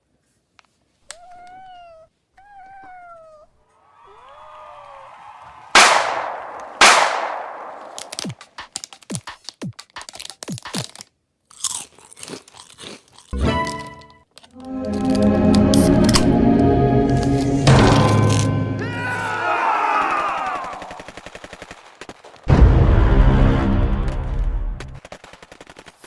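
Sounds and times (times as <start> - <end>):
loud crunching crashes: 5.6 - 11.0, 17.2 - 25.1
clicks snaps and crunches: 5.8 - 16.4, 17.2 - 18.6
music with held notes: 13.4 - 19.1.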